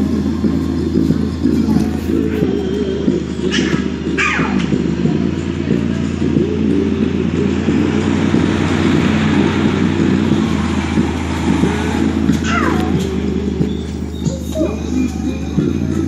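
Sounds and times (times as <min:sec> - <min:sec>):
loud rumbling buzz from speaker: 0:00.0 - 0:16.0.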